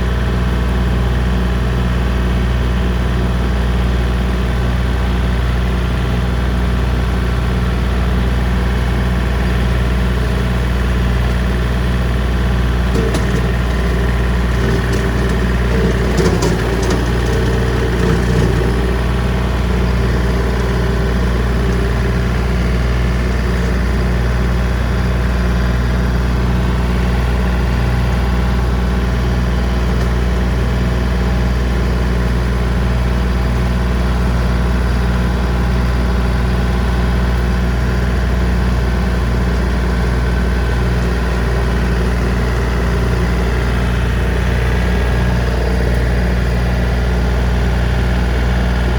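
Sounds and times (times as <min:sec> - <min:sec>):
tractor diesel engine running: 0:00.0 - 0:48.9
rotary cutter: 0:12.9 - 0:24.0.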